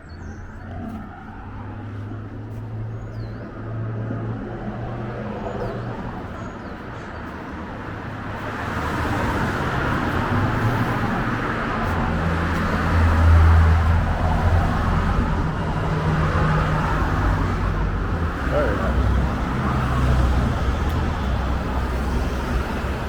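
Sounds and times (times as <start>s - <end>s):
vehicle passing with engine hum: 0.1s - 23.0s.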